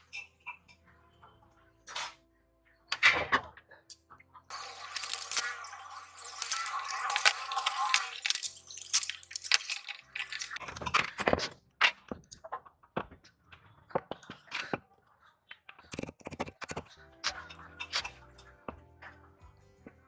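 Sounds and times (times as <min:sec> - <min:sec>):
metal parts clicking and clinking: 0:04.5 - 0:10.6
metal scraping rattle: 0:04.5 - 0:10.6.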